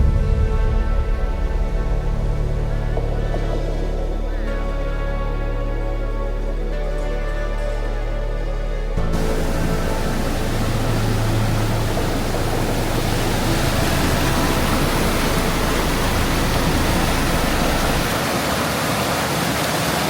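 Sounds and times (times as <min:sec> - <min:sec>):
waterfall crashing: 0:09.2 - 0:20.0.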